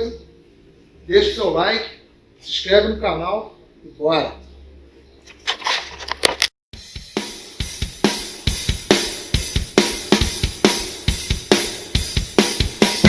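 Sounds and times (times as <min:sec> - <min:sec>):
rock drum beat with cymbals: 0:06.8 - 0:13.0.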